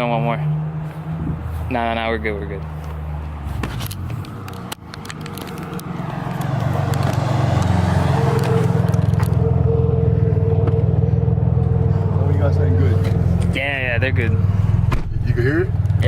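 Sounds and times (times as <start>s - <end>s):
turbocharged car engine running: 5.4s - 16.0s.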